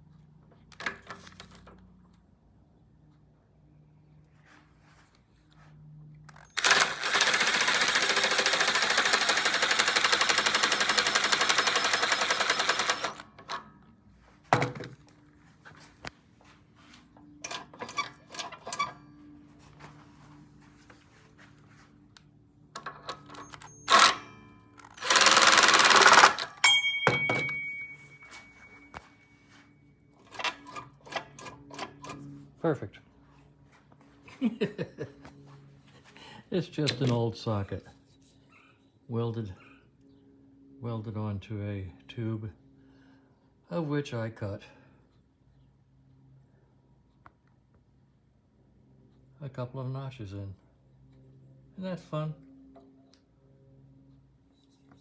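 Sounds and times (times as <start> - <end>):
impact wrench hammering: 6.6 - 13.3, 23.9 - 24.2, 24.8 - 28.1
metal clicks and clinks: 22.8 - 28.0.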